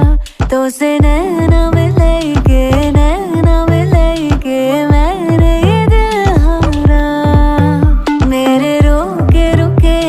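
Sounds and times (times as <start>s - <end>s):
film song with drum beat: 0.0s - 10.0s.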